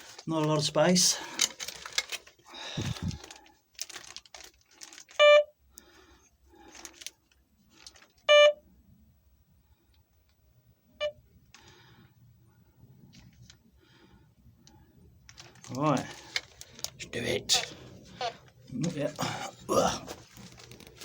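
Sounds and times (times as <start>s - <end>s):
metal detector low beeps: 8.3s - 8.6s.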